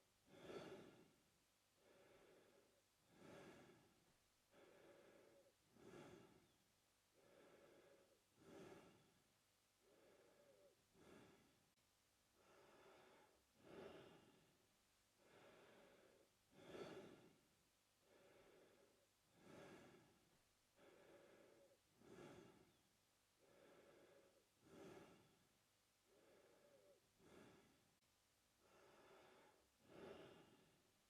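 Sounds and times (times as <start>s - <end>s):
man breathing through mouth: 0.3s - 1.2s, 1.8s - 6.6s, 7.2s - 9.2s, 9.8s - 11.6s, 12.4s - 14.4s, 15.2s - 17.4s, 18.0s - 20.2s, 20.8s - 22.8s, 23.4s - 25.4s, 26.0s - 27.8s, 28.6s - 30.8s.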